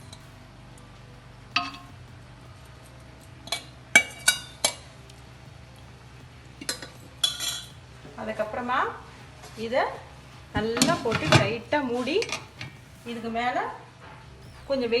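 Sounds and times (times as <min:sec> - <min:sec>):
metal utensils clinking on pot: 0:10.6 - 0:12.8.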